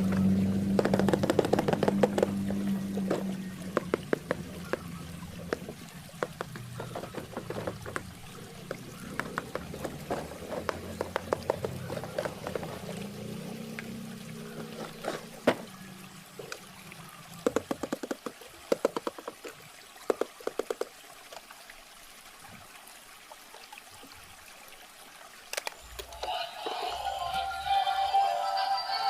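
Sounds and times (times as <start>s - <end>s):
low hum: 0.0s - 17.5s
sharp water drips: 0.0s - 26.8s
water trickling and pouring: 0.0s - 29.0s.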